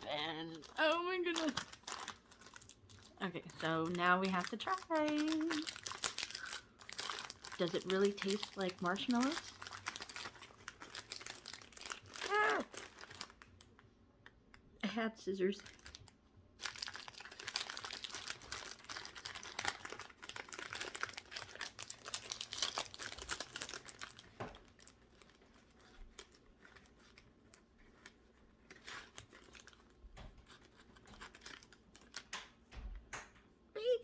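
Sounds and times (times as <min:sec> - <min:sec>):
packaging crinkling and tearing: 0:00.0 - 0:14.4, 0:15.6 - 0:32.7.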